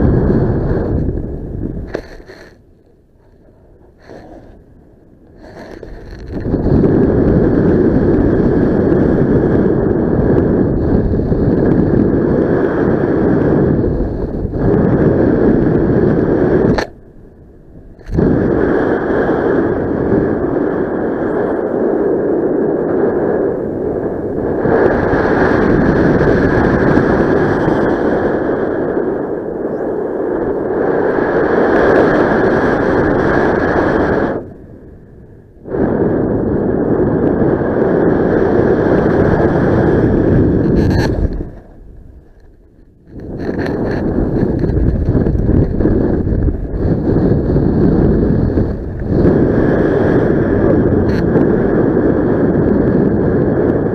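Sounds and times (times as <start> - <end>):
wind rushing over microphone: 0.0 - 53.9.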